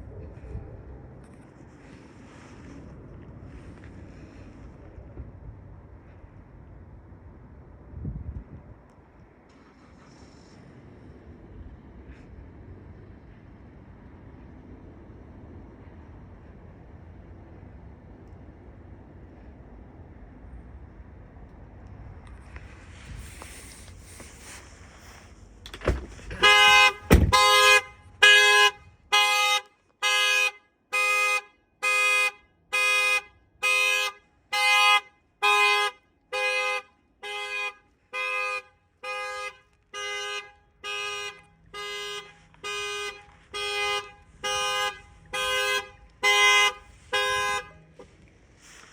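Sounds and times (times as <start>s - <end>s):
heavy thumps: 25.7s - 27.5s
car alarm horn honking: 26.3s - 48.1s.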